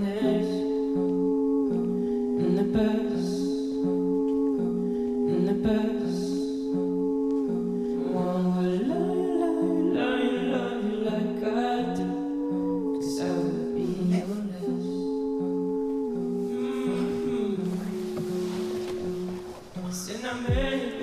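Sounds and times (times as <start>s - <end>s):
slow song with held vocal melody: 0.0s - 21.0s.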